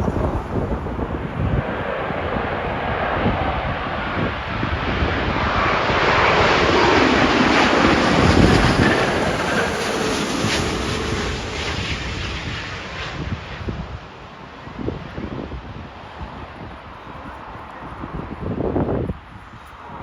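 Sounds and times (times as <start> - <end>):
jet airliner passing overhead: 0.0 - 20.0
wind buffeting microphone: 0.0 - 20.0.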